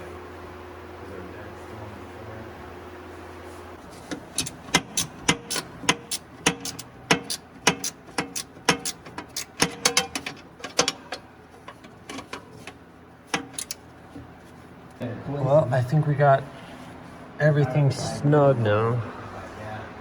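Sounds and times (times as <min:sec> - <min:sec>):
hand ratchet clicking: 0:04.1 - 0:13.8.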